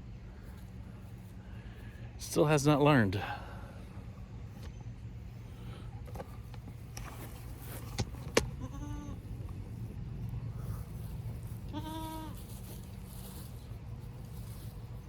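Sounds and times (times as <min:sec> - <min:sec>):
goat bleating: 0:08.4 - 0:09.4, 0:11.6 - 0:12.6.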